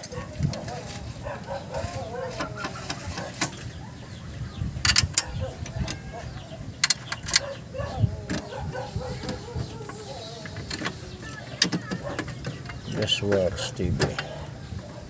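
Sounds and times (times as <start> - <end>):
hand tools clinking on metal: 0.0 - 3.8, 4.8 - 7.6
faint voices: 0.0 - 15.0.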